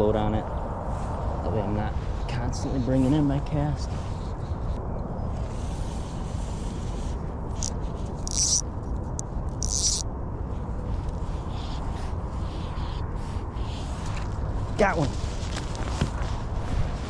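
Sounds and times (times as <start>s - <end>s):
fly line zipping through guides: 5.6s - 10.1s.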